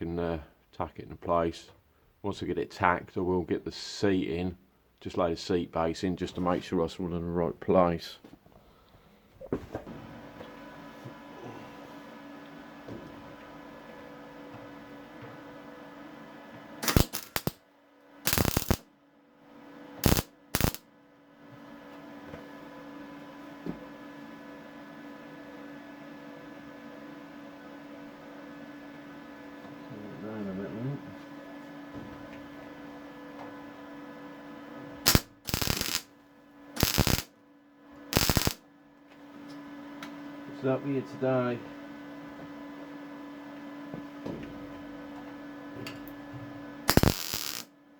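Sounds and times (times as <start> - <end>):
welding arc crackling: 16.8 - 17.6, 18.3 - 18.8, 20.0 - 20.8, 35.1 - 36.1, 36.8 - 37.3, 38.1 - 38.6, 46.9 - 47.7.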